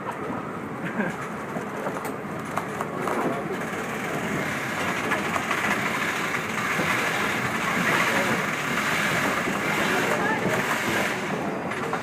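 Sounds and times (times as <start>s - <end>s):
steam train running: 0.0s - 12.0s.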